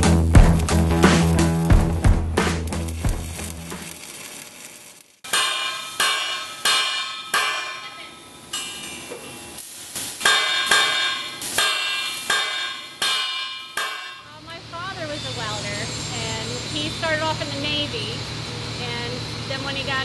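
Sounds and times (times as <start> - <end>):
hammer striking metal: 5.2 - 9.4, 10.2 - 14.3.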